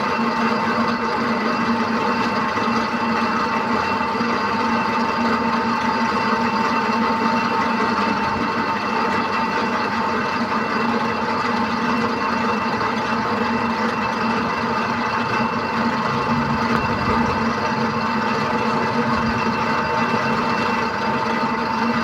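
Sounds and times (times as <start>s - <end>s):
hoist motor humming: 13.8s - 21.2s.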